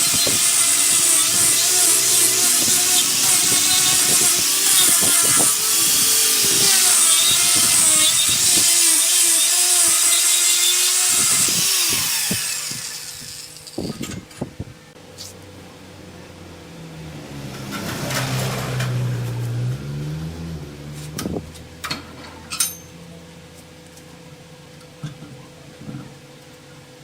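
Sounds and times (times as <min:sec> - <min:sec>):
power tool cutting wood: 0:00.0 - 0:14.0, 0:17.0 - 0:21.4.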